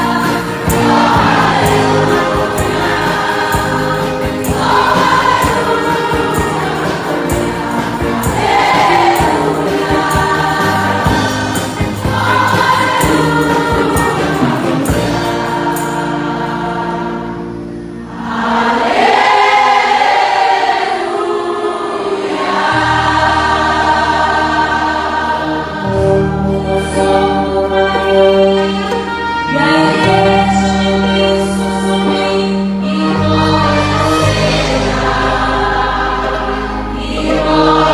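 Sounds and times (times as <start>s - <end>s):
instrumental backing: 0.0s - 19.3s
choir singing a hymn: 0.0s - 37.9s.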